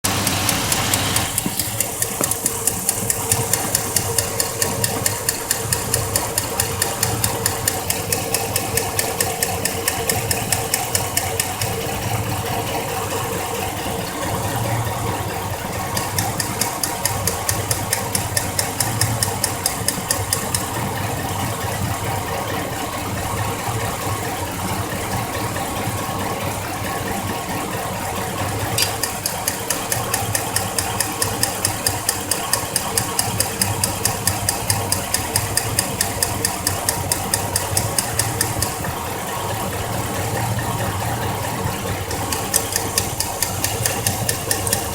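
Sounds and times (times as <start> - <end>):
truck engine idling: 0.0 - 24.0, 27.0 - 44.9
sharp regular metallic ticking: 0.1 - 12.0, 15.9 - 20.9, 28.8 - 38.9, 42.0 - 44.9.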